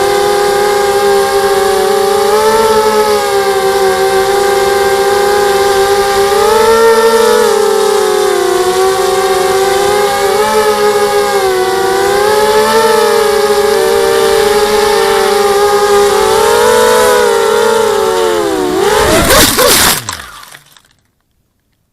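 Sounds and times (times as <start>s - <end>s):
drone motors whining: 0.0s - 20.9s.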